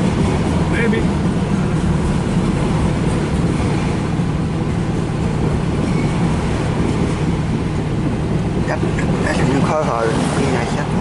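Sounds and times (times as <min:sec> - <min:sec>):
train wheels rumbling on rails: 0:00.0 - 0:11.0.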